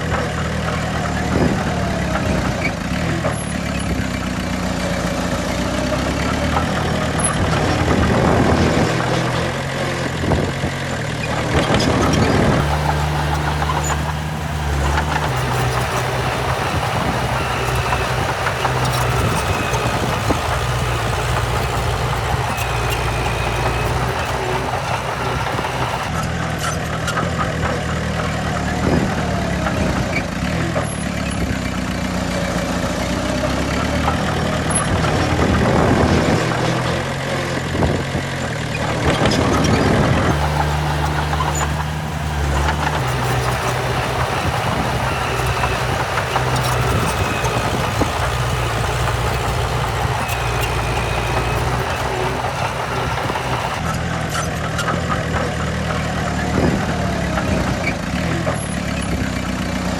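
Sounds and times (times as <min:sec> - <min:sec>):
diesel engines of heavy machinery: 0:11.1 - 0:26.2, 0:40.2 - 0:53.9.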